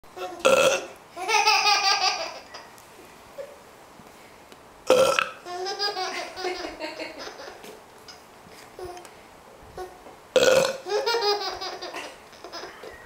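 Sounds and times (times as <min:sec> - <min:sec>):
loud human burp: 0:00.4 - 0:00.8, 0:04.9 - 0:05.4, 0:10.4 - 0:10.8.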